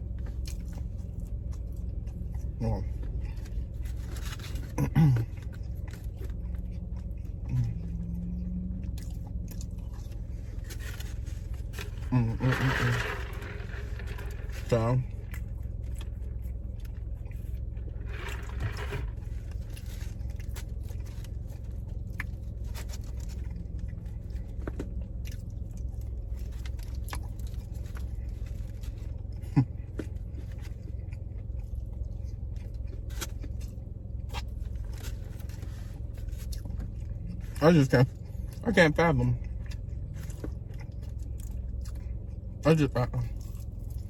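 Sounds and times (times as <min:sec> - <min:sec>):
car interior rumble: 0:00.0 - 0:44.0
chewing and crunching food: 0:00.0 - 0:44.0
small clicks and scrapes: 0:09.1 - 0:23.6.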